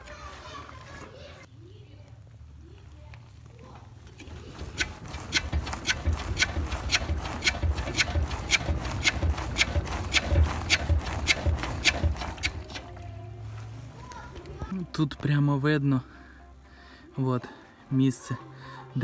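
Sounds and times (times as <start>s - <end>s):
car suspension bushings knocking: 4.0s - 13.1s.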